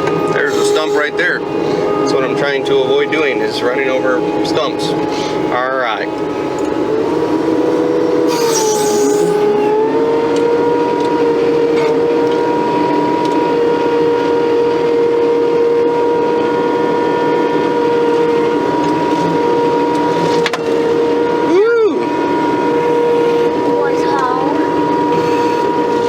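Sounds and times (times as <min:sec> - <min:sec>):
diesel engine and hydraulics: 0:00.0 - 0:26.0
short hiss: 0:08.3 - 0:09.5.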